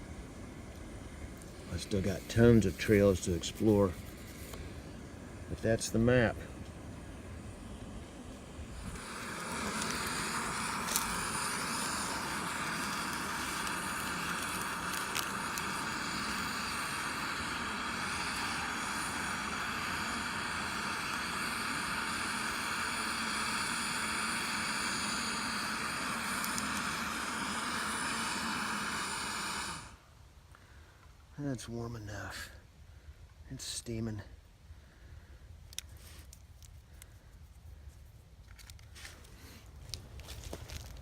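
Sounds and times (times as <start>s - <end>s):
gas stove hissing: 0.0s - 30.2s.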